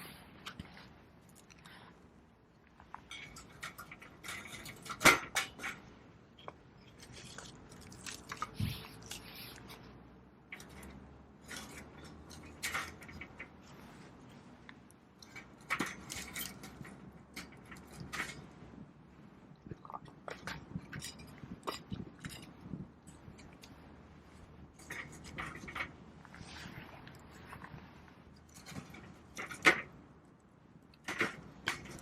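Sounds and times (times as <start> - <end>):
knife shaving wood: 7.0 - 9.8.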